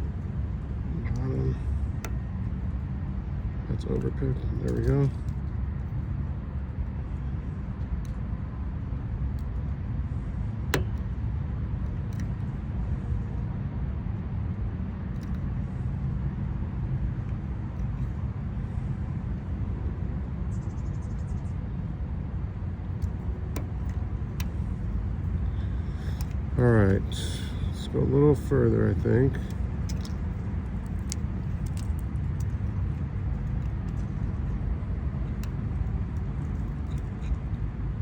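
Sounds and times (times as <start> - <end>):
low outdoor rumble: 0.0 - 38.0.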